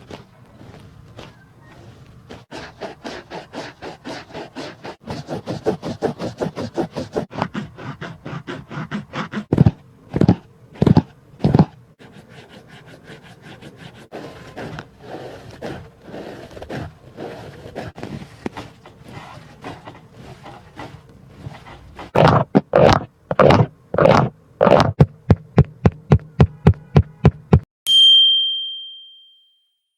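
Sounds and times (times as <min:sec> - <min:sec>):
soft rubbing and rustling: 0:00.0 - 0:25.0
shoebox scraping and rustling: 0:13.5 - 0:25.0.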